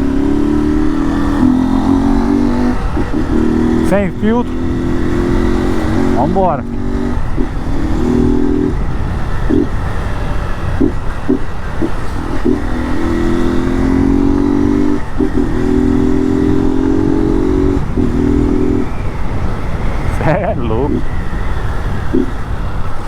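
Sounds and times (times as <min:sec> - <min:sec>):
motorcycle engine pulling: 0:00.0 - 0:23.0
wind rumble on microphone: 0:00.0 - 0:23.0.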